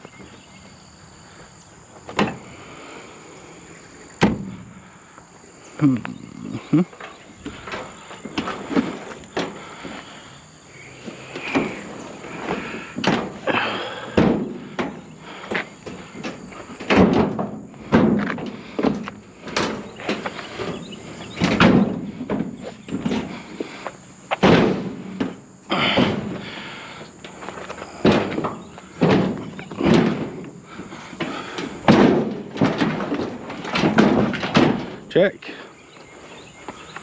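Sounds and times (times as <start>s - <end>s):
metal cabinet thuds and scrapes: 2.0s - 2.6s, 3.9s - 5.0s, 6.6s - 35.7s.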